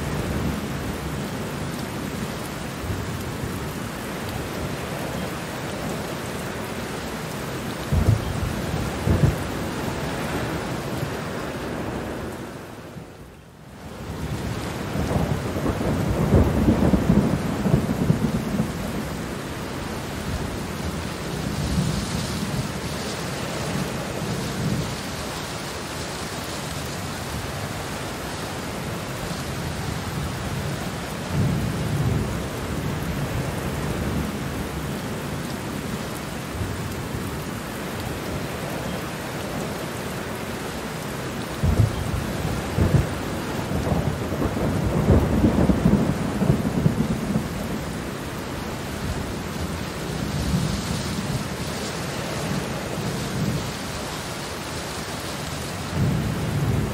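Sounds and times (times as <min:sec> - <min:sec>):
steady rain: 0:00.0 - 0:56.9
thunder rumbling: 0:07.9 - 0:10.6, 0:14.1 - 0:22.8, 0:41.6 - 0:51.6, 0:55.8 - 0:56.9.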